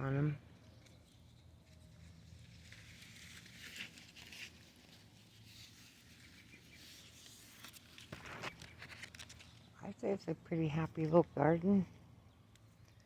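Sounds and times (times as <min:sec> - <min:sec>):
soft rustling: 0:00.7 - 0:09.8.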